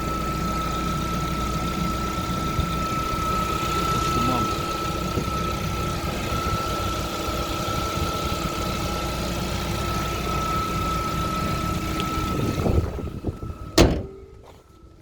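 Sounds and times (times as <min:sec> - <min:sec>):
constant high whine: 0:00.0 - 0:15.0
car engine idling: 0:00.1 - 0:15.0.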